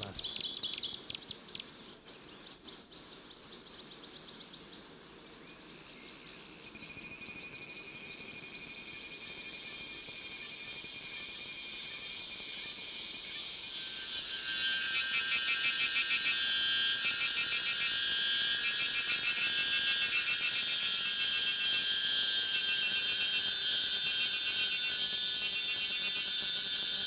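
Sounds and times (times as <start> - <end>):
pulsing insect call: 0.0 - 1.2, 6.4 - 27.0
cicadas buzzing: 0.0 - 2.5, 4.9 - 27.0
bird chirps: 0.0 - 4.1.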